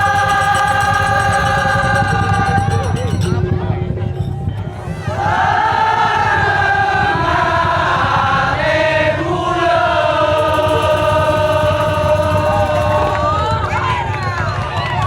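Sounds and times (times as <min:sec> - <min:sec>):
wavering sustained melody: 0:00.0 - 0:05.6, 0:10.4 - 0:13.5
continuous low drumming: 0:00.0 - 0:15.0.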